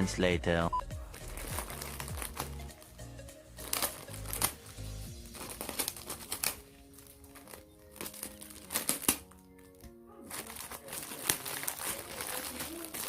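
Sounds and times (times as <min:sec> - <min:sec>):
background music with bass line: 0:00.0 - 0:05.4
sharp crackles: 0:01.0 - 0:02.9, 0:03.6 - 0:13.0
parcel packaging crinkling: 0:01.0 - 0:13.0.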